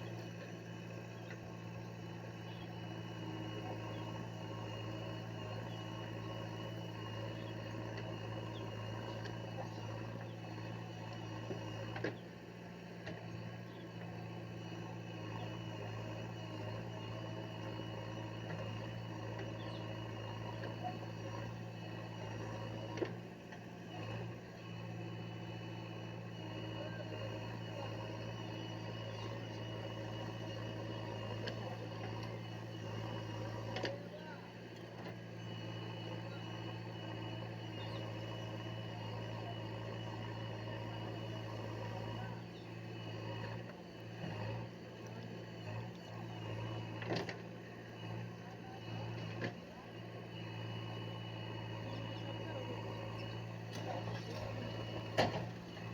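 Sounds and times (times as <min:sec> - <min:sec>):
heavy diesel engine running: 0:00.0 - 0:55.9.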